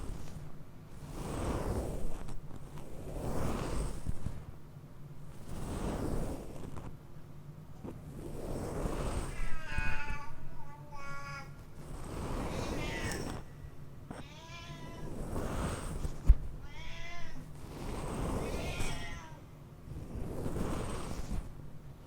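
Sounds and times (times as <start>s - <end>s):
cat meowing: 9.3s - 11.5s, 12.5s - 13.5s, 14.2s - 15.2s, 16.6s - 17.5s, 18.4s - 19.4s.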